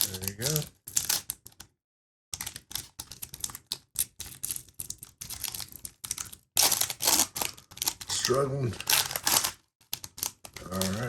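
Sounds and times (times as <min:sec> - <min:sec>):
wrapper crinkling: 0:05.3 - 0:11.0.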